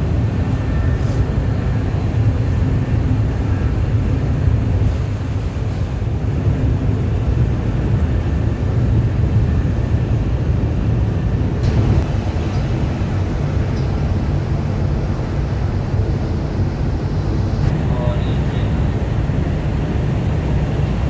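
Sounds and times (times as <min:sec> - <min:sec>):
train rumbling inside carriage: 0:00.0 - 0:21.0.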